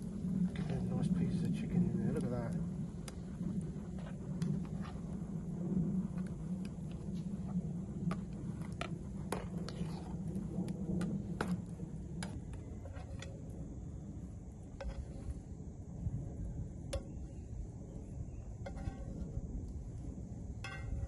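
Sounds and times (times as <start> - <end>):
low steady rumble: 0.0 - 21.0.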